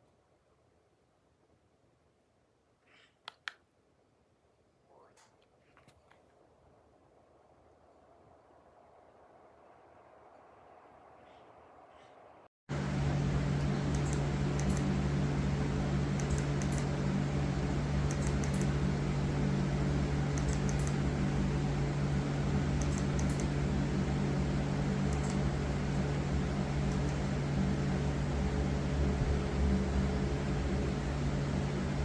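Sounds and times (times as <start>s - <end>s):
ceiling fan motor hum: 6.5s - 32.0s.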